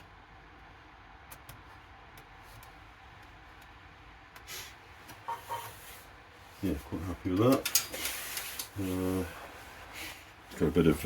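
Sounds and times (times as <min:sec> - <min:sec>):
scraping rustle: 0:05.3 - 0:09.9.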